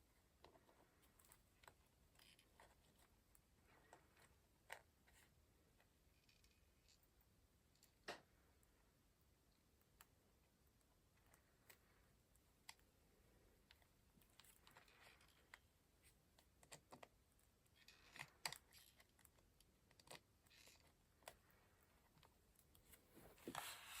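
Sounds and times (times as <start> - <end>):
paper rustling: 22.8 - 24.0.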